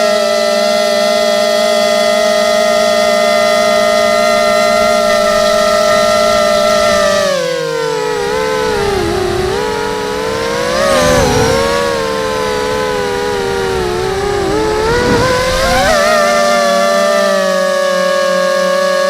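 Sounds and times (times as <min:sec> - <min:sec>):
quadcopter motors whining: 0:00.0 - 0:19.0
gusts of rushing noise: 0:08.0 - 0:16.9.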